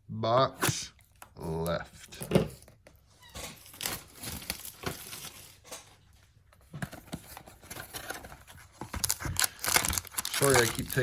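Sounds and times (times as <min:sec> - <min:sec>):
packaging scrapes and rustles: 0:03.4 - 0:05.9, 0:06.9 - 0:11.0.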